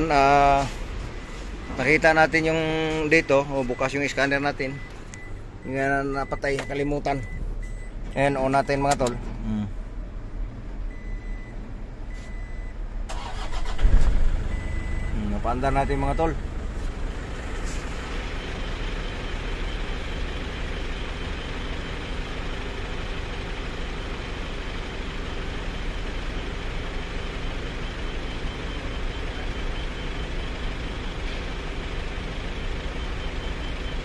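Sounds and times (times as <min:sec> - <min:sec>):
diesel engine idling: 0:00.0 - 0:34.0.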